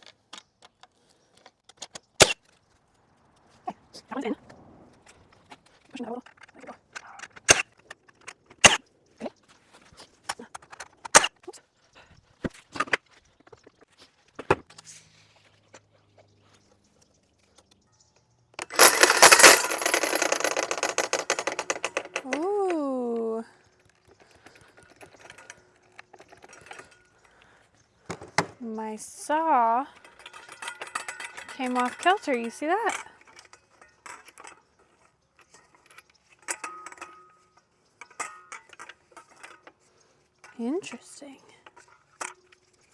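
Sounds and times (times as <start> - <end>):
metal parts clinking: 18.6 - 22.8, 24.2 - 27.4, 29.9 - 41.0.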